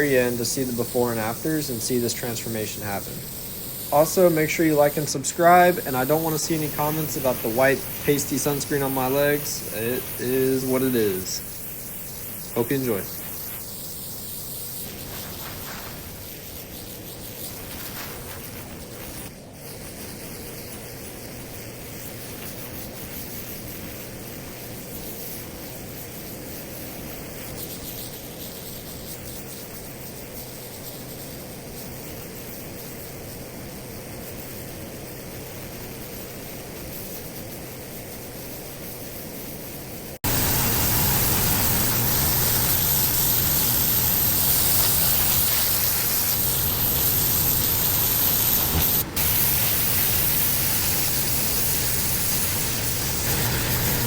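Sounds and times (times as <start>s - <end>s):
pressure washer water jet hissing: 0.0s - 54.0s
engine running: 40.2s - 49.8s, 52.4s - 54.0s.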